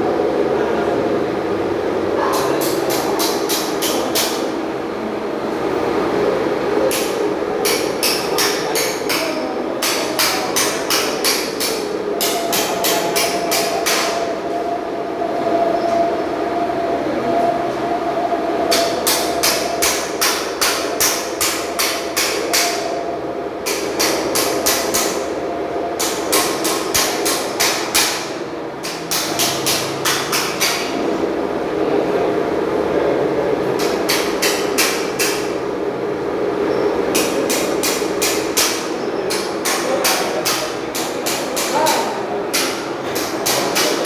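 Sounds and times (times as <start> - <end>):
steady hum: 0.0 - 44.0
hammer striking metal: 6.9 - 14.3, 18.7 - 23.0, 23.6 - 25.3, 26.0 - 31.0, 33.8 - 35.6.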